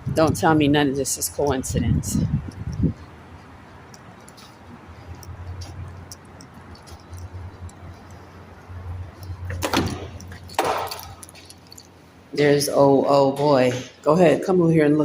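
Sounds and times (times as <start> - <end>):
door banging: 9.5 - 11.2.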